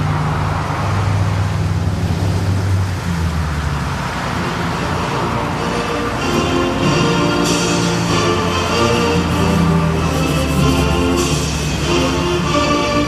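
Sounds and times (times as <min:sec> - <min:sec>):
broad noisy background: 0:00.0 - 0:13.0
lawnmower engines humming: 0:00.0 - 0:13.0.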